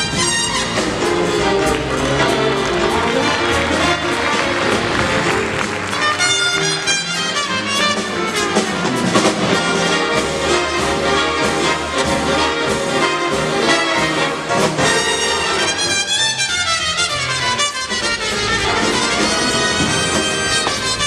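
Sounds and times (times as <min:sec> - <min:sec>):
big band brass section: 0:00.0 - 0:21.0.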